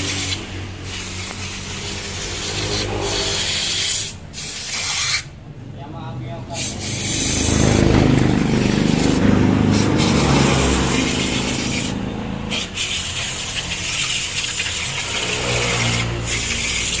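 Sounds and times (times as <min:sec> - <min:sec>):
hissing blasts of compressed air: 0:00.0 - 0:05.4, 0:06.5 - 0:17.0
motor running: 0:06.6 - 0:17.0.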